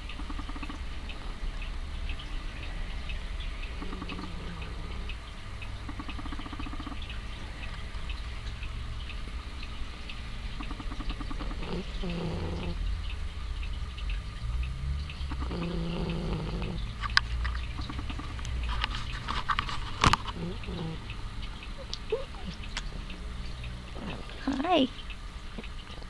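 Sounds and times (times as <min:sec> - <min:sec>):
cat snoring: 0:03.7 - 0:05.2, 0:10.7 - 0:12.8, 0:15.3 - 0:16.9, 0:20.3 - 0:21.1.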